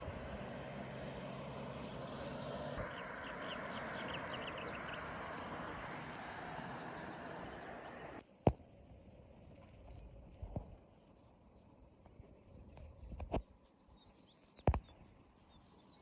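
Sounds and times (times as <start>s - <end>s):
bird chirps: 1.1s - 8.2s
steady rushing noise: 2.2s - 8.2s.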